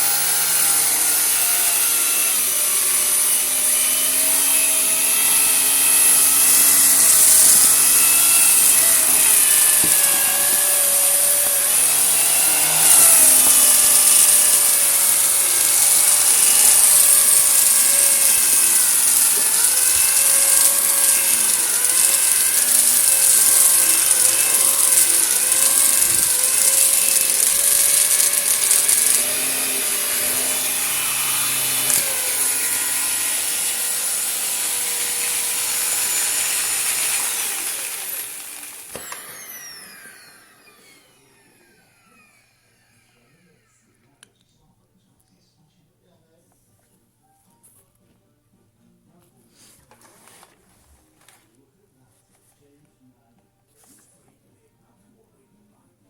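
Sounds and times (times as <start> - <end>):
vacuum cleaner running: 0.0 - 43.8
grit rasping in vacuum: 4.4 - 41.2.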